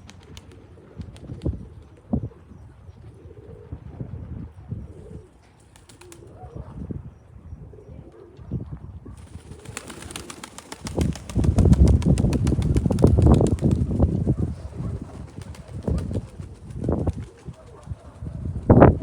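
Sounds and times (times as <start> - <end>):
wind rumble on microphone: 0.0 - 5.5, 6.2 - 19.0
pigeons cooing: 3.0 - 6.8, 9.2 - 18.8.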